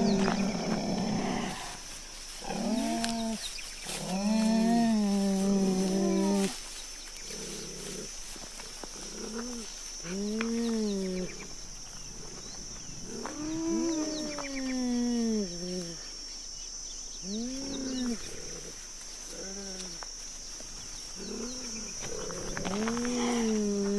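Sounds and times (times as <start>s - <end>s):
big cat calling: 0.0s - 1.8s, 21.2s - 23.9s.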